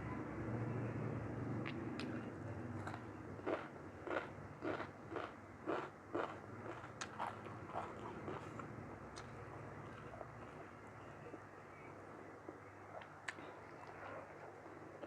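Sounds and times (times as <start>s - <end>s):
chewing food: 1.6s - 11.5s.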